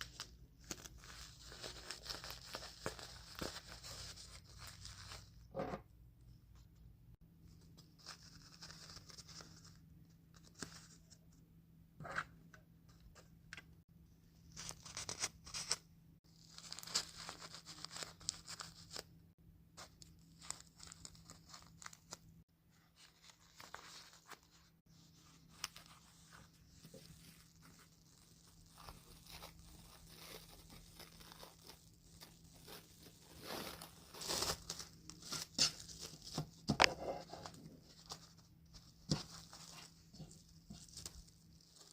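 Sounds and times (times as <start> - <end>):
paper and plastic wrap tearing: 26.9 - 36.3.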